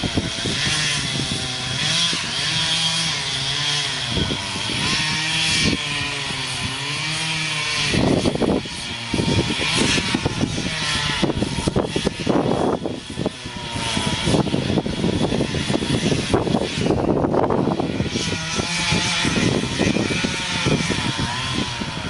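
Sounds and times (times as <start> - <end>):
chainsaw engine revving: 0.0 - 22.0.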